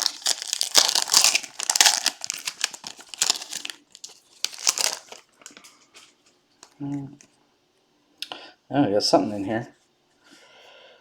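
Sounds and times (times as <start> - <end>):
card pack wrapper tearing and crinkling: 0.0 - 5.6.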